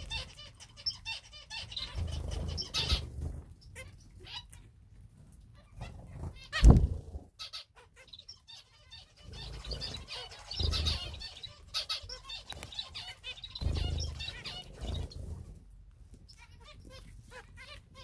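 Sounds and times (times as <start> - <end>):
finches and canaries chirping: 0.0 - 15.6, 16.2 - 18.0
wing flapping: 6.5 - 7.2
loud thump: 6.6 - 7.0.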